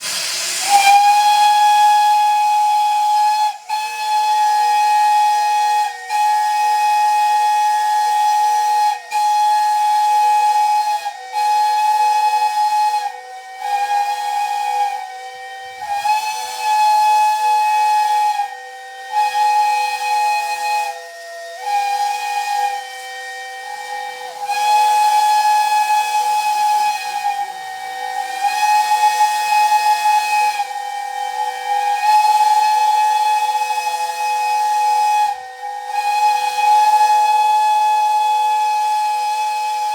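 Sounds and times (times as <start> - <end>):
steady hiss: 0.0 - 15.0
train whistle blasts: 0.0 - 39.9.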